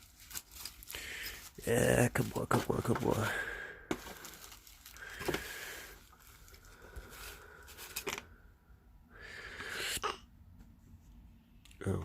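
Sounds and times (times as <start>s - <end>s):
packaging rustling: 0.0s - 8.3s.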